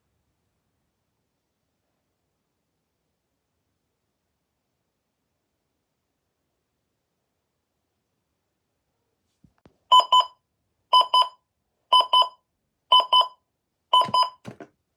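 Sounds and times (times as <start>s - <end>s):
short electronic beeps: 9.9s - 10.3s, 11.0s - 11.4s, 12.0s - 13.4s, 14.0s - 14.5s.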